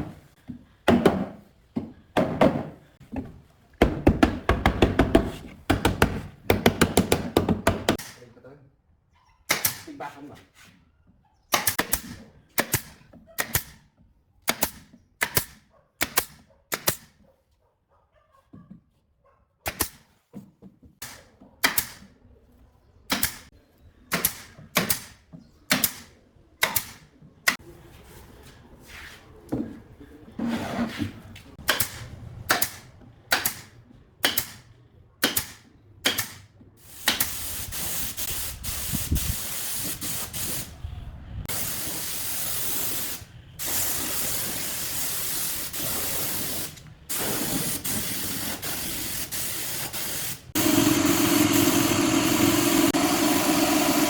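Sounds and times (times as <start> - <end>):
pneumatic spray gun hissing: 36.8 - 40.7, 41.5 - 54.0.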